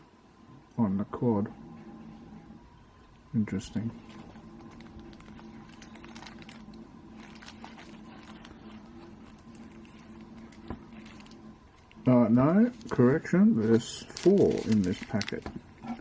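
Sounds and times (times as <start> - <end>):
low steady hum: 0.0 - 16.0
plastic packets rustling and clicking: 4.0 - 16.0.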